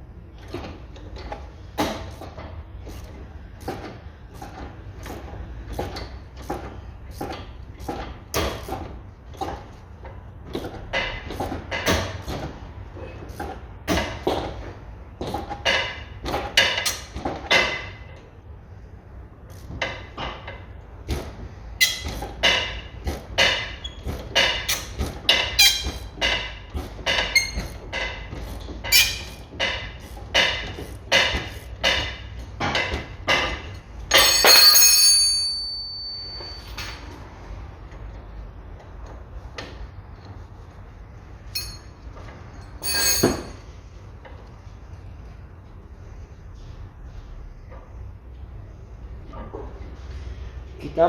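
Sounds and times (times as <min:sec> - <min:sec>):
loud metallic clang: 0:34.1 - 0:37.1.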